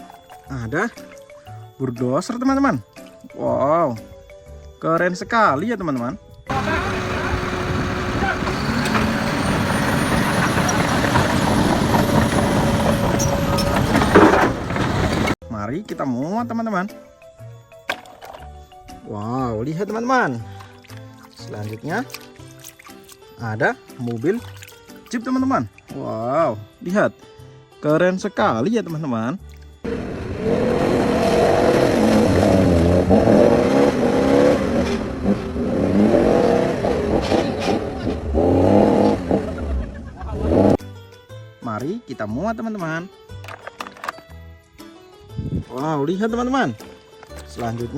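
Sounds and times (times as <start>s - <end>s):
car engine revving: 6.5s - 15.4s, 29.9s - 40.8s
toy wheels rolling and rattling: 8.1s - 15.4s.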